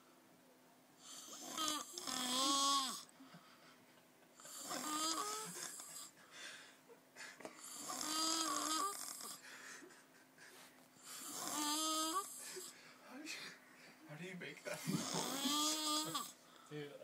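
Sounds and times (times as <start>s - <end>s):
man snoring: 1.0s - 3.1s, 4.4s - 6.2s, 7.6s - 9.4s, 11.0s - 12.8s, 14.8s - 16.4s.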